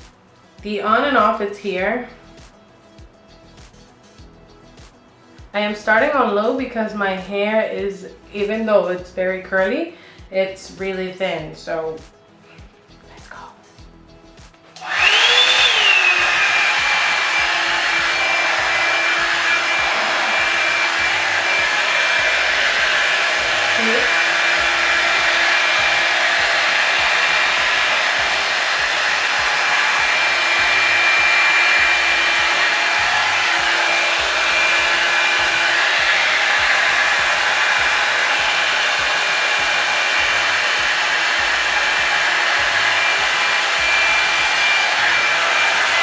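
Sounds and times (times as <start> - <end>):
hair dryer brush whining: 14.8 - 46.0.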